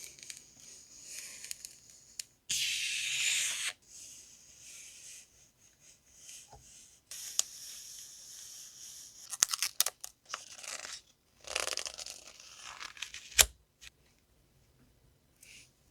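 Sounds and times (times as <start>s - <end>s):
packaging crinkling and tearing: 9.3s - 13.5s.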